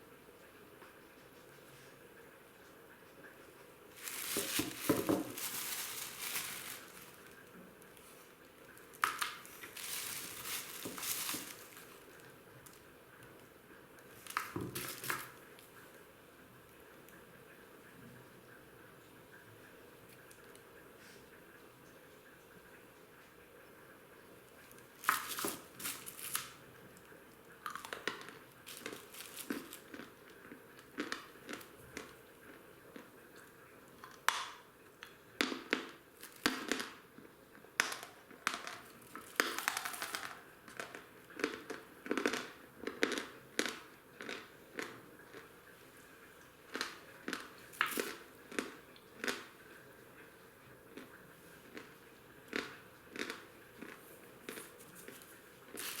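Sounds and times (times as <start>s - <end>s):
chalk crunching while chewed: 24.6s - 34.3s, 39.1s - 45.5s, 46.7s - 49.7s, 50.9s - 56.0s.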